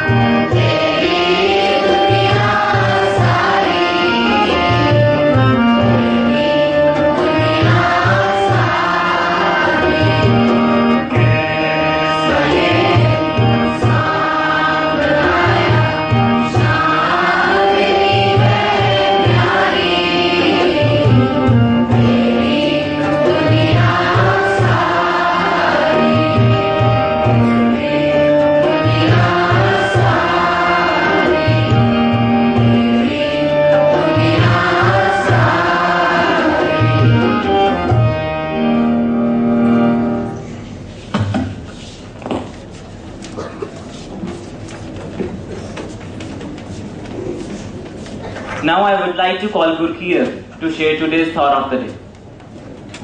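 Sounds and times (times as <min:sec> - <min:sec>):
tabla rhythm: 0:00.0 - 0:38.3.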